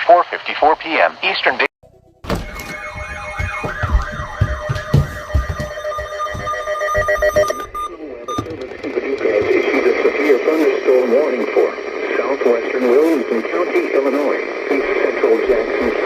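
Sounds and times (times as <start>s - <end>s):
low thumps: 1.8s - 9.7s
steady tones: 1.8s - 16.0s
warbling siren alert tone: 2.0s - 8.6s
person speaking: 7.6s - 16.0s.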